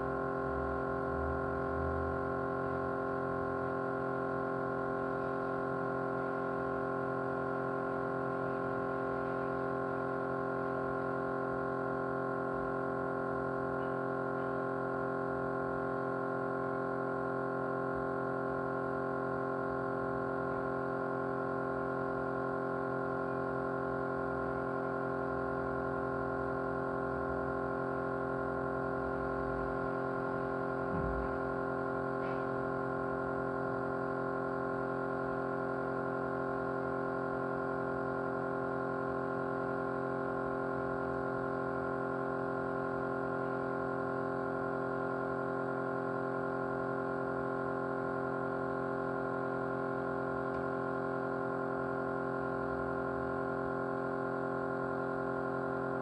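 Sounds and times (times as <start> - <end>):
small motor humming: 0.0 - 56.0
low thump: 30.9 - 31.4.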